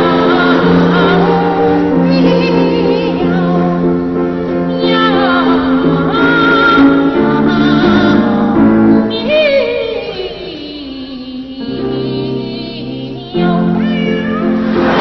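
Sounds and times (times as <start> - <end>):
boys choir singing: 0.0 - 9.2, 14.4 - 15.0.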